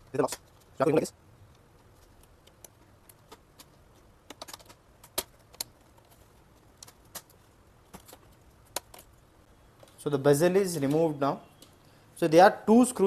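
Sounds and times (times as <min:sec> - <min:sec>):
plastic clips snapping: 0:02.2 - 0:09.2.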